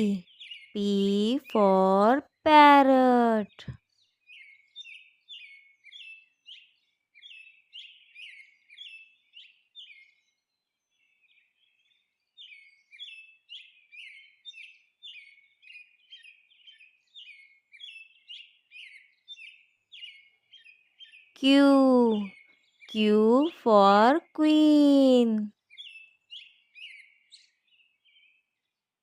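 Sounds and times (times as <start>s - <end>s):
birds chirping: 0.0s - 3.8s, 22.9s - 25.5s.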